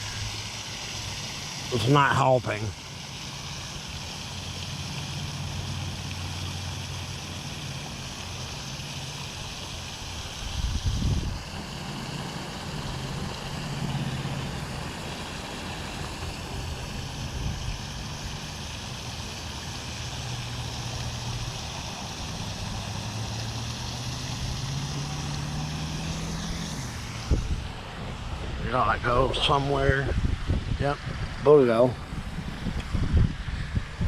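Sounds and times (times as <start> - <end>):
wind hiss: 0.0 - 34.0
vehicle engine droning: 11.1 - 30.6.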